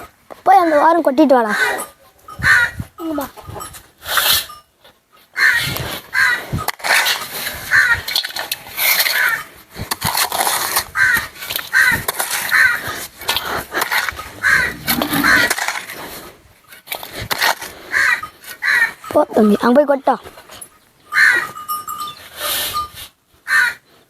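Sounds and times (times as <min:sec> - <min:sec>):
crows cawing: 0:14.4 - 0:15.5, 0:21.2 - 0:21.4, 0:23.5 - 0:23.8.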